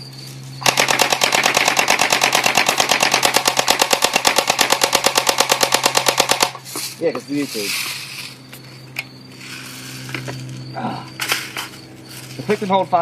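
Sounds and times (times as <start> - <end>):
bb gun full-auto burst: 0.6 - 6.6.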